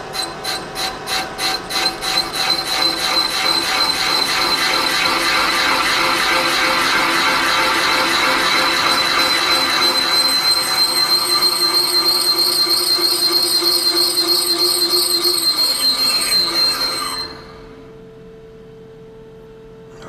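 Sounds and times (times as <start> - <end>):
cutter squealing on metal: 0.0 - 17.9
machine humming: 2.3 - 18.2.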